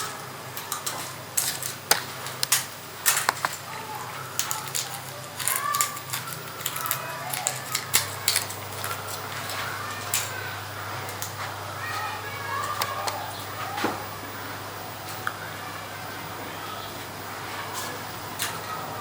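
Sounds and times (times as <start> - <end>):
hands handling small objects: 0.6 - 3.6, 4.3 - 10.4.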